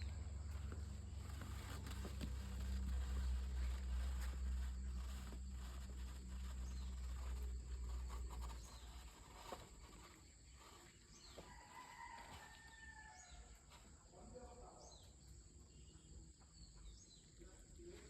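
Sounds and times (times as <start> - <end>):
low engine hum: 0.0 - 10.8.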